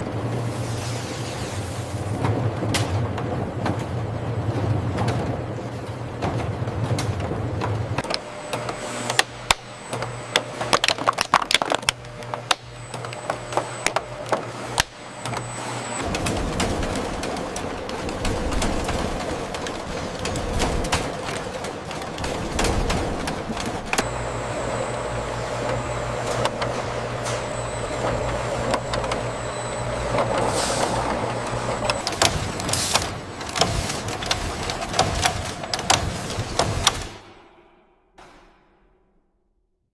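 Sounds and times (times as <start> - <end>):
steady low hum: 0.0 - 38.0
machinery clicking and clattering: 1.2 - 37.5
faint high whine: 8.1 - 17.2, 23.9 - 33.5.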